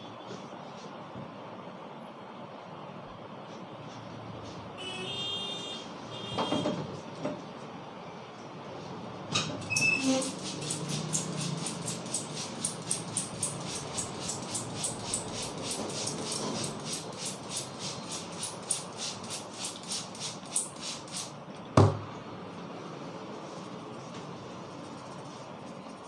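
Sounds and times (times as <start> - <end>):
loud thump: 21.8 - 22.1.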